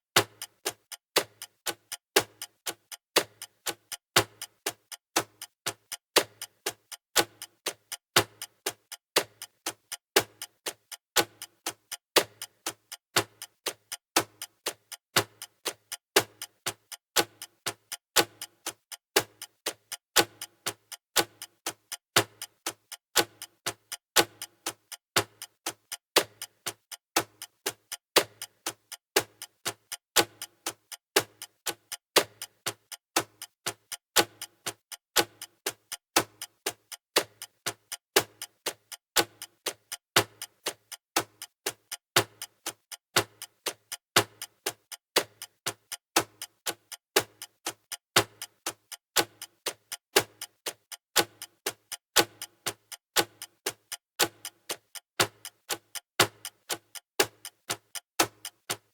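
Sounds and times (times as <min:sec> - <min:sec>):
clock ticking: 0:00.2 - 0:58.9.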